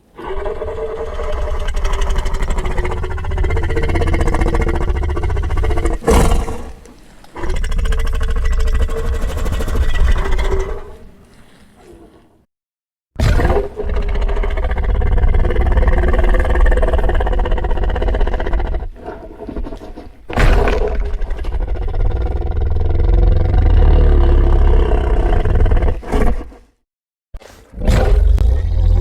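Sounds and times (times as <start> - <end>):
monster roar: 0.2 - 6.6, 13.2 - 18.9, 20.4 - 26.0, 27.8 - 29.0.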